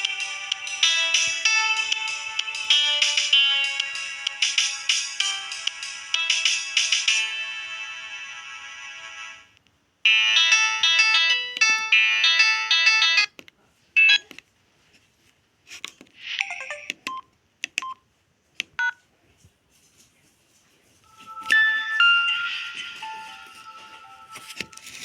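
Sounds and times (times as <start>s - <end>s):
phone ringtone melody: 0.0s - 9.3s, 10.1s - 13.3s, 21.1s - 25.0s
busy electronic tune: 21.1s - 25.0s
chiming alert tones: 21.1s - 25.0s.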